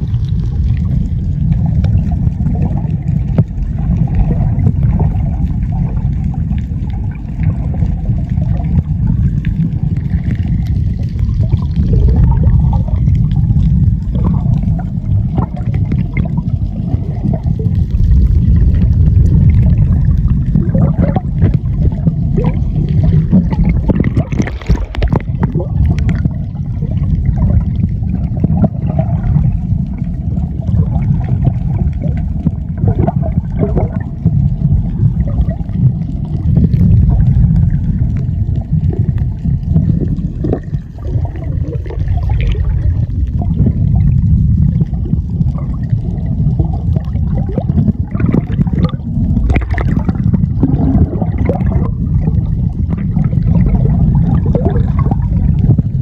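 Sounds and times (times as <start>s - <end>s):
steady low rumble: 0.0s - 56.0s
water bubbling: 0.0s - 56.0s
water gurgling and sloshing: 0.0s - 56.0s.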